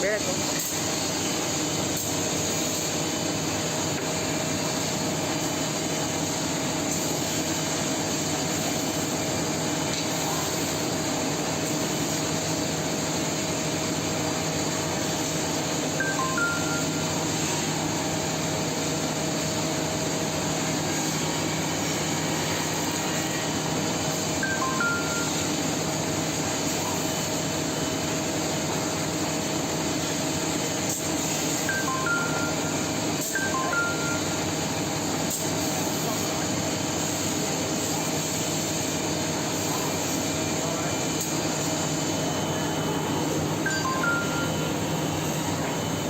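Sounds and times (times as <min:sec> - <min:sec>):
two-note electronic beep: 0:16.0 - 0:17.2, 0:24.4 - 0:25.6, 0:31.7 - 0:34.6, 0:43.6 - 0:45.4.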